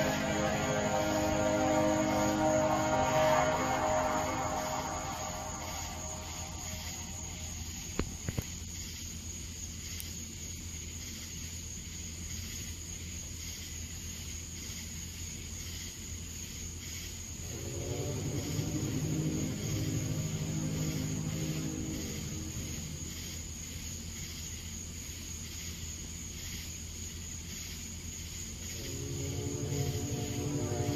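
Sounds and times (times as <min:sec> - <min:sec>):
low horn-like drone: 0:00.0 - 0:08.2, 0:17.4 - 0:23.7, 0:28.7 - 0:30.9
high steady whine: 0:00.0 - 0:08.5, 0:17.4 - 0:24.2, 0:28.7 - 0:30.9
steady low hum: 0:00.0 - 0:08.7, 0:17.3 - 0:25.3, 0:28.5 - 0:30.9.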